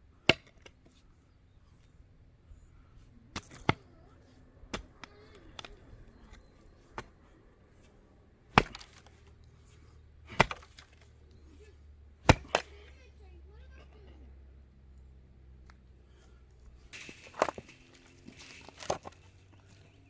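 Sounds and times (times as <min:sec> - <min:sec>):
hand tool striking: 0:08.6 - 0:09.0, 0:12.3 - 0:12.7, 0:16.9 - 0:20.0.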